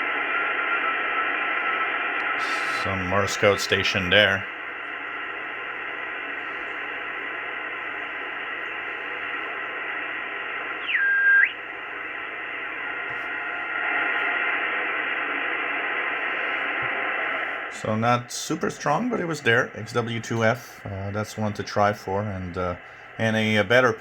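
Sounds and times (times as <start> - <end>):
radio static hiss: 0.0 - 24.0
sliding carrier tone whistle: 10.8 - 11.6.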